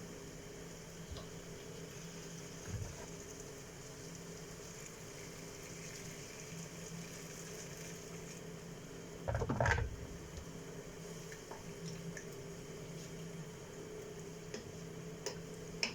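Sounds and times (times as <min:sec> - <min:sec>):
knock and scrape: 0:09.3 - 0:10.0.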